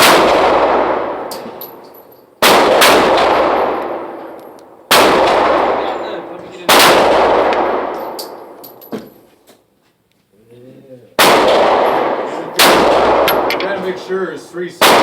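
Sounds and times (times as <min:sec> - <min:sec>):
pistol shots echoing: 0:00.0 - 0:08.8, 0:11.2 - 0:14.1, 0:14.8 - 0:15.0.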